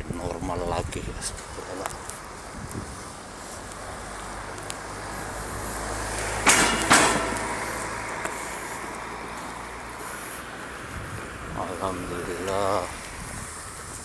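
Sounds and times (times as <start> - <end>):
motor vehicle engine running: 2.4 - 11.4
sharp loud bangs: 6.4 - 8.0.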